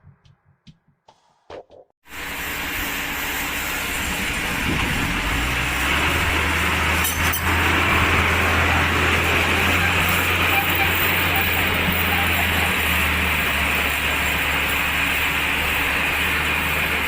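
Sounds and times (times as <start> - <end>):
sawmill machinery running: 2.1 - 17.0.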